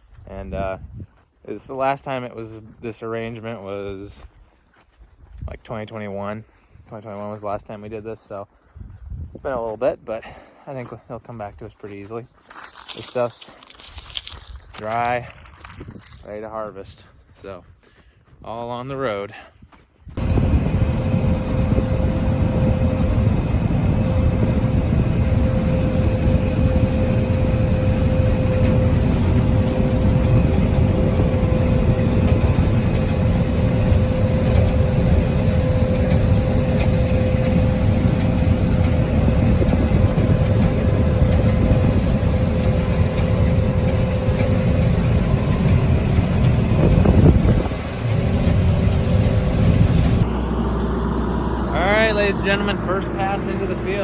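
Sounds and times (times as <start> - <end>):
diesel engine drone: 20.2 - 54.0
steady machine whine: 20.2 - 54.0.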